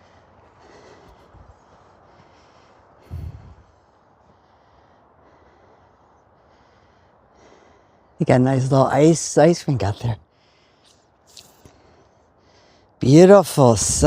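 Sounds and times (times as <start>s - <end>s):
short exhale of breath: 3.0s - 3.6s.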